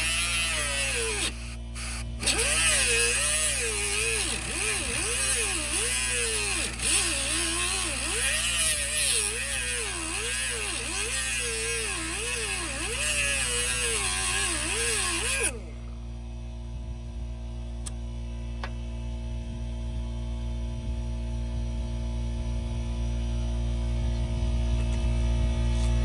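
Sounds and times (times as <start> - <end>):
power tool cutting metal: 0.0 - 15.8
steady low hum: 0.0 - 26.0.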